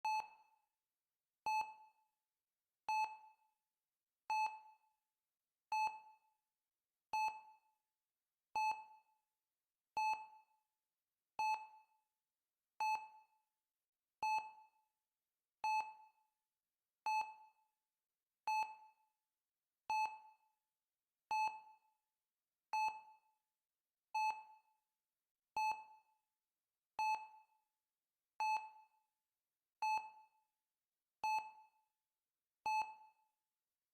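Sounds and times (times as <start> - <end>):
heart-rate monitor beeps: 0.0 - 0.6, 1.4 - 2.0, 2.9 - 3.4, 4.3 - 4.8, 5.7 - 6.3, 7.1 - 7.7, 8.6 - 9.1, 10.0 - 10.6, 11.4 - 12.0, 12.8 - 13.4, 14.2 - 14.8, 15.6 - 16.2, 17.0 - 17.6, 18.5 - 19.0, 19.9 - 20.5, 21.3 - 21.9, 22.7 - 23.3, 24.1 - 24.7, 25.5 - 26.1, 27.0 - 27.6, 28.4 - 29.0, 29.8 - 30.4, 31.2 - 31.8, 32.6 - 33.2.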